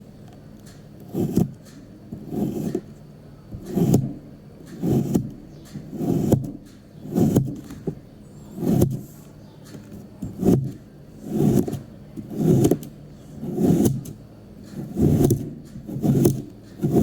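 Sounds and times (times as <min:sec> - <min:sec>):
sand being cut and pressed: 0:04.8 - 0:05.2, 0:05.9 - 0:06.4, 0:07.1 - 0:07.5, 0:10.3 - 0:12.8, 0:13.4 - 0:14.0, 0:14.8 - 0:17.0.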